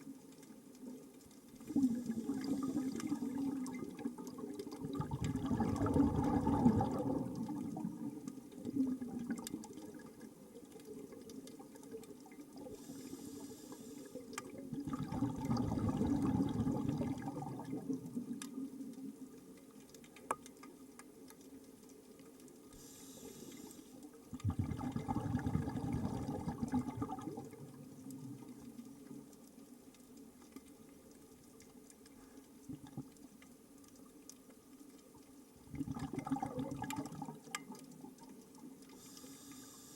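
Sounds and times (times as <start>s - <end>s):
regulator hiss on inhale: 1.6s - 3.2s, 12.6s - 14.4s, 22.7s - 24.1s, 38.9s - 39.9s
exhaled bubbles rushing: 1.7s - 10.2s, 14.5s - 18.4s, 24.3s - 28.4s, 35.6s - 38.0s.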